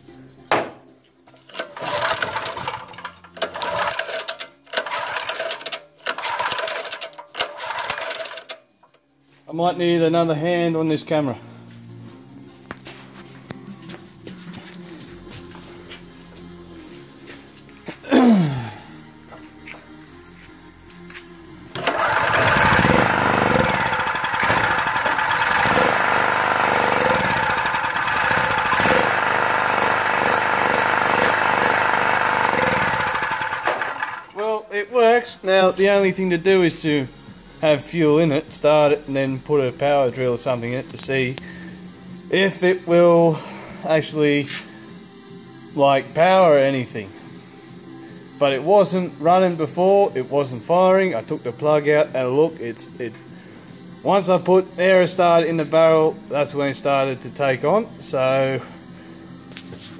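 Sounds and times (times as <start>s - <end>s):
small engine cranking: 1.4s - 8.6s, 21.7s - 34.4s.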